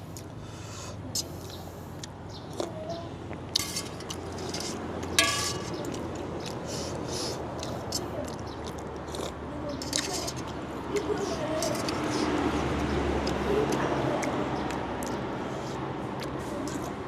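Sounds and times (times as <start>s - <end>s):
spoon clinking against bowl: 3.6s - 6.1s.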